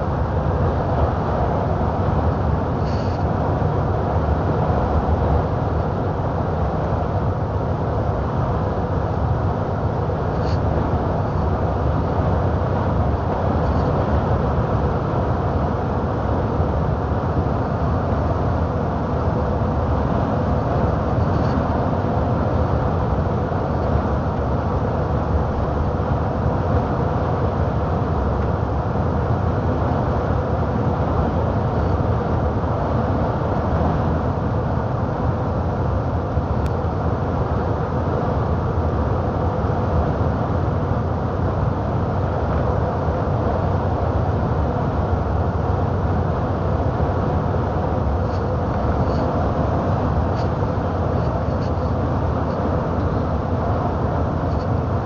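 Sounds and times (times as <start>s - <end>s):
faint constant hum: 0.0s - 55.0s
truck engine and road noise: 0.0s - 55.0s.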